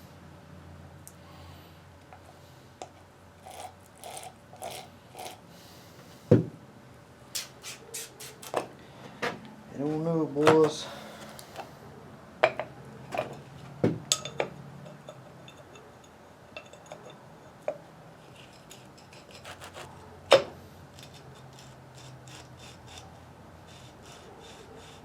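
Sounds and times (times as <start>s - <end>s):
faint steady hum: 0.0s - 25.0s
rubbing and scraping: 7.4s - 9.4s, 18.3s - 20.1s.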